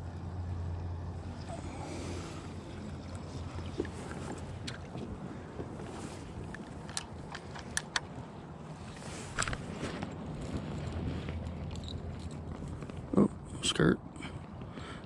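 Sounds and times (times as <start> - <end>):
low hum: 0.0 - 15.0
gear clicks and knocks: 6.4 - 8.1.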